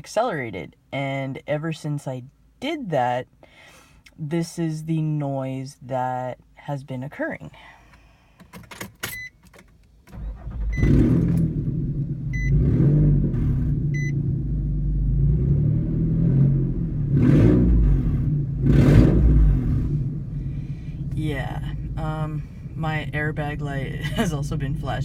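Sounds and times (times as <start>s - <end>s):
loud low droning car noise: 10.6s - 25.0s
short beeps: 12.3s - 12.6s, 14.0s - 14.2s.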